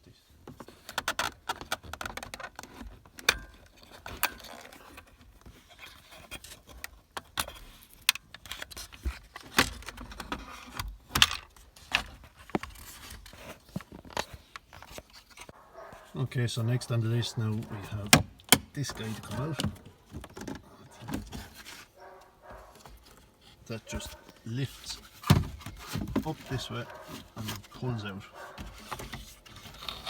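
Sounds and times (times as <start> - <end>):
scraping of plastic trim: 17.4 - 30.0.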